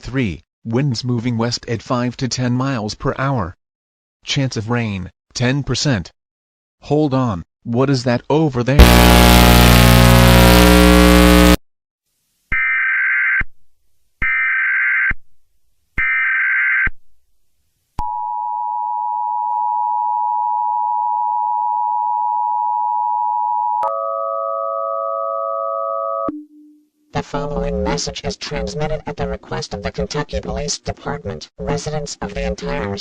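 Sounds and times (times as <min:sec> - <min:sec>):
loud sound cut off: 0:08.8 - 0:11.6.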